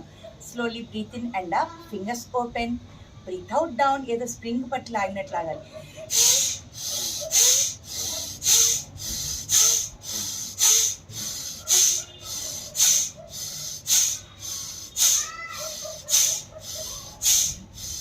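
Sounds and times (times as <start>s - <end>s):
woman breathing forcefully: 5.8s - 18.0s.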